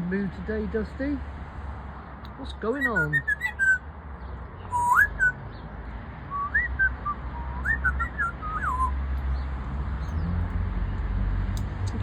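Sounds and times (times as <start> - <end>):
parrot whistling: 2.8 - 3.8, 4.7 - 5.4, 6.3 - 9.0
high chirps: 4.7 - 5.4, 6.3 - 9.0.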